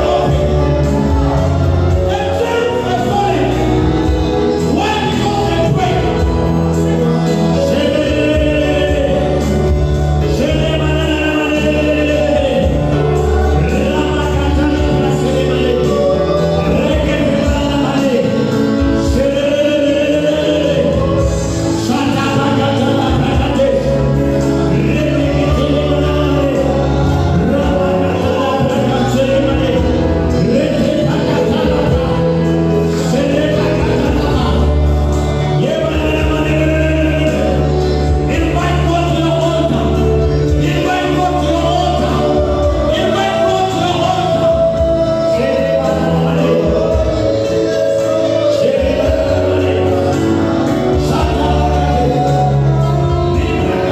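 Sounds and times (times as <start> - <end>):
instrumental accompaniment with bass: 0.0 - 53.9.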